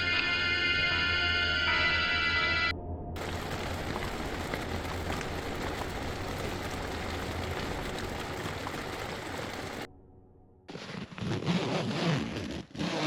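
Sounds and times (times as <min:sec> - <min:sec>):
steady rain falling: 0:03.2 - 0:09.9.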